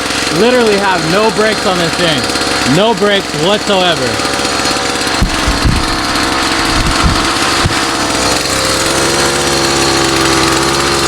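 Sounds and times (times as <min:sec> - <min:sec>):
small two-stroke engine running: 0:00.0 - 0:11.0
low thumps: 0:05.1 - 0:08.4.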